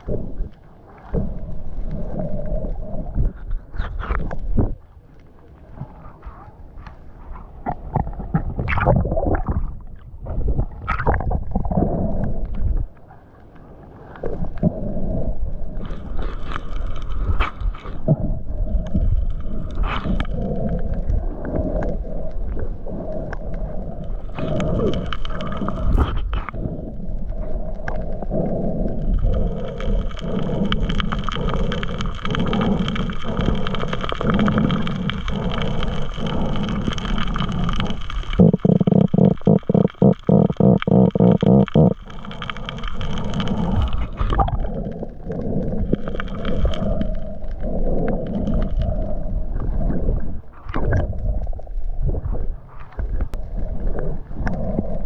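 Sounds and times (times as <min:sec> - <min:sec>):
muffled underwater rumbling: 0:00.0 - 0:55.0
scattered clicks: 0:29.0 - 0:47.3.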